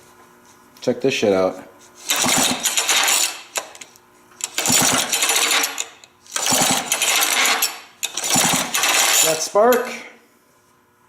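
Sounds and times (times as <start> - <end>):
chainsaw recoil starter whirring: 2.0 - 10.0.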